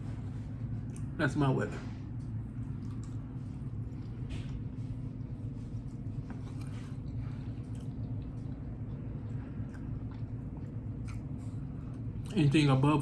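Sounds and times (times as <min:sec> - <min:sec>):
man chewing food: 0:00.0 - 0:01.2, 0:02.1 - 0:12.4
low hum: 0:00.0 - 0:13.0.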